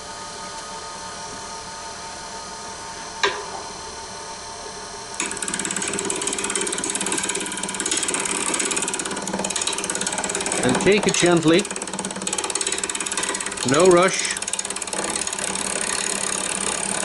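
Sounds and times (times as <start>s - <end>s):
turning tool clattering on log: 5.2s - 17.0s
wood lathe humming: 5.2s - 17.0s.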